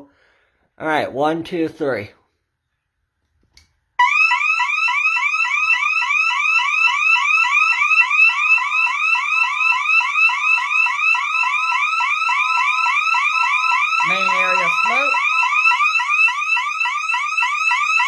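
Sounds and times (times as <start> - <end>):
alarm siren chirping: 4.0 - 18.0.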